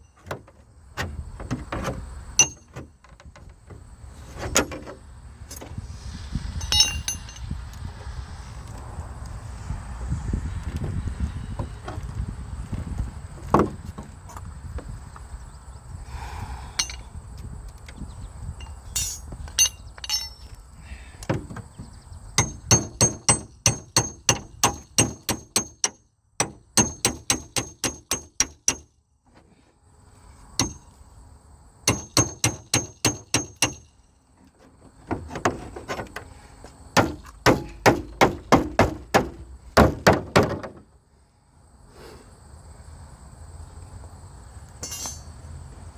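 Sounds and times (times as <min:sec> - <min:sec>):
hammer striking metal: 0:02.4 - 0:02.8, 0:06.6 - 0:07.4, 0:19.0 - 0:20.5, 0:22.4 - 0:28.9, 0:30.6 - 0:30.9, 0:31.9 - 0:33.9, 0:37.0 - 0:40.2.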